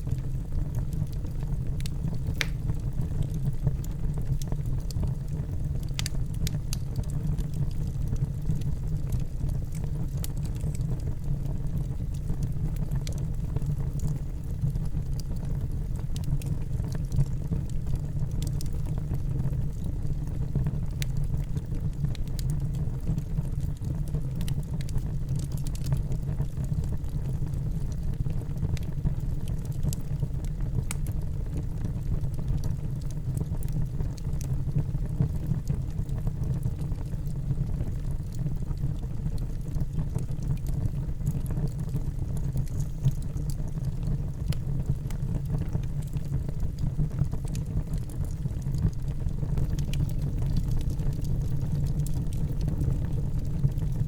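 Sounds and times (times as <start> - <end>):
fire crackling and popping: 0.0 - 54.0
low rush of flames: 1.8 - 3.6, 27.8 - 54.0.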